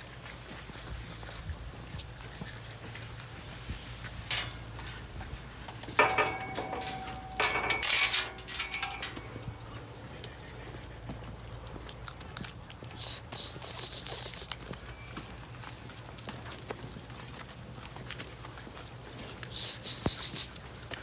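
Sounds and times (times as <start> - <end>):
metal fittings clanking: 4.3 - 9.4.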